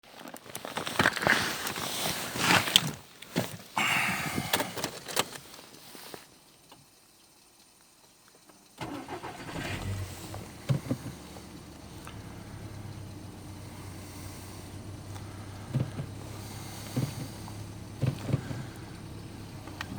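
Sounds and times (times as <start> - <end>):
clicks and handling noise: 0.1 - 6.2
car engine starting and idling: 8.7 - 19.9.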